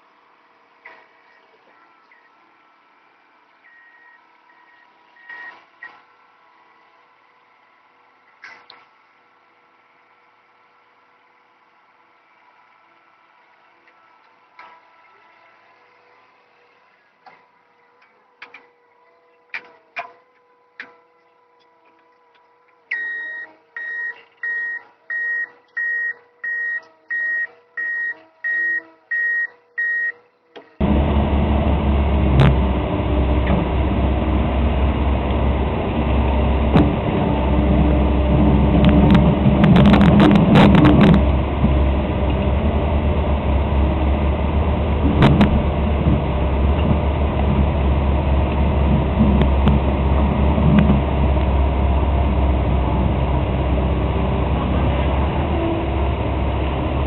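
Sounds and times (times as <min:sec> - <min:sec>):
heavy engine running: 0:00.0 - 0:18.7, 0:30.6 - 0:57.0
reversing alarm beeping: 0:03.7 - 0:05.6, 0:22.9 - 0:30.2.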